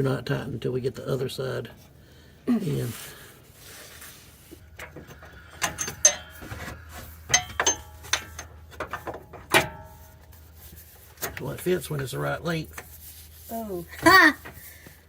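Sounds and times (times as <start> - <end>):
metal clinks and knocks: 4.7 - 11.4.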